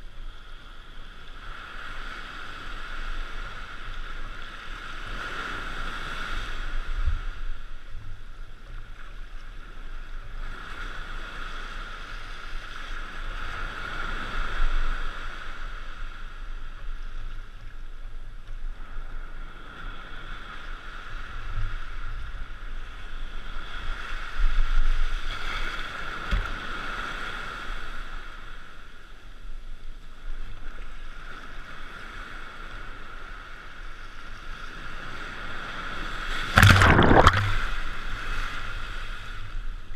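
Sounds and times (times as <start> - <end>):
ocean surf breaking: 36.3 - 38.8.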